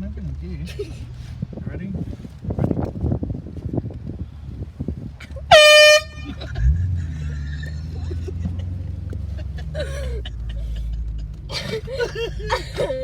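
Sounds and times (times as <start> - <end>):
air horn blast: 5.5 - 6.4
car engine pulling away: 6.1 - 13.0.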